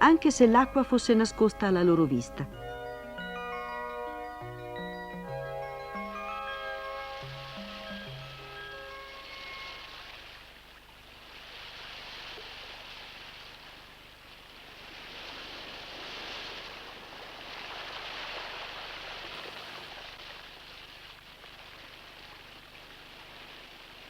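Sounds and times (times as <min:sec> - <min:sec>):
surf washing on a beach: 0:09.4 - 0:24.0.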